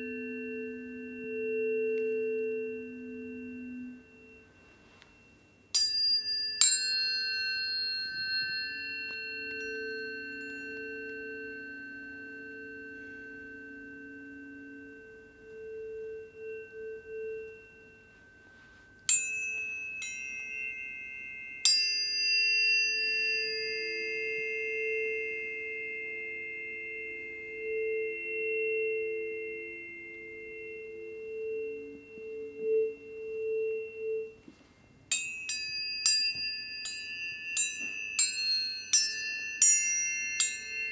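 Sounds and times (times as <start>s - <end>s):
tuning fork strike clang: 0.0s - 40.9s
tuning forks ringing tones: 0.0s - 40.9s.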